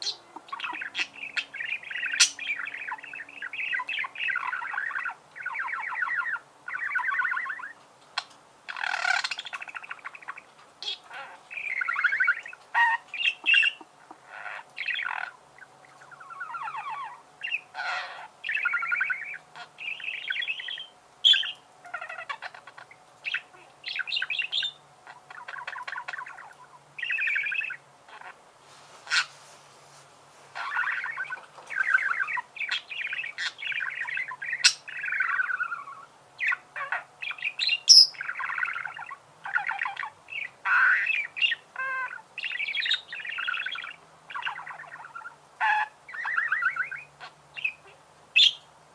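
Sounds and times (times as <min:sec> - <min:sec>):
budgerigars chirping: 0:00.0 - 0:28.4, 0:29.0 - 0:29.4, 0:30.6 - 0:48.7.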